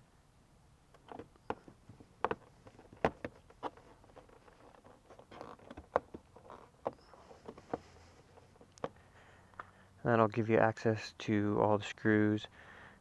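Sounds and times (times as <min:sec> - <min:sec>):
floor mats clicking and knocking: 0:00.9 - 0:09.0
rustling: 0:00.9 - 0:09.7.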